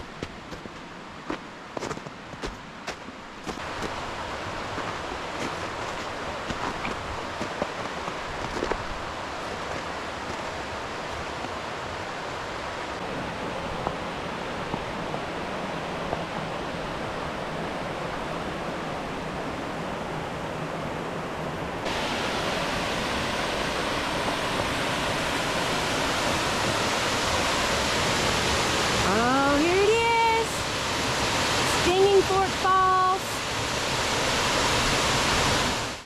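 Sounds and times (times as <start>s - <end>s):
waterfall rushing: 21.7s - 36.0s.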